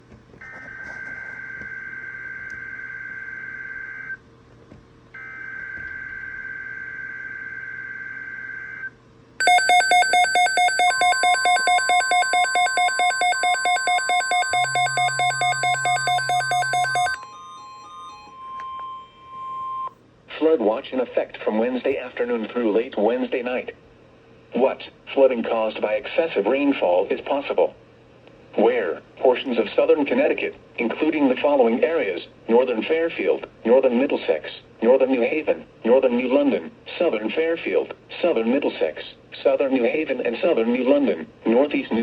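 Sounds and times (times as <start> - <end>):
faint steady tone: 7.3 - 20.0
rapidly pulsing alert signal: 9.4 - 17.2
steady electronic beep tones: 9.4 - 19.9.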